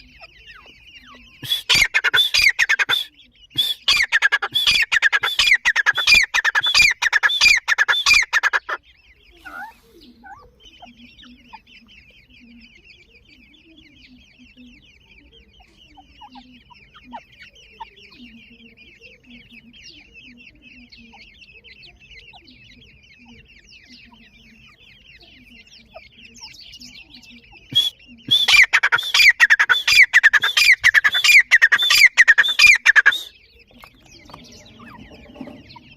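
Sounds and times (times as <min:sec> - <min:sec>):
francolins peeping and clucking: 0:00.0 - 0:35.9
harsh rapid bird calls: 0:00.0 - 0:35.9.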